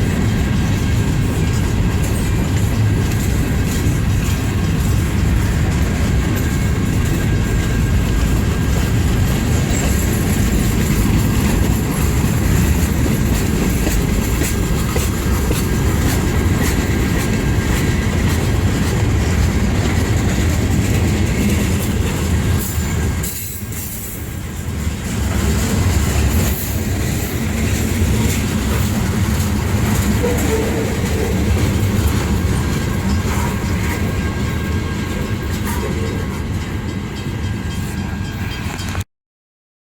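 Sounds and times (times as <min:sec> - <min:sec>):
train clatter: 0:00.0 - 0:39.0
train wheels rumbling on rail: 0:00.0 - 0:39.0.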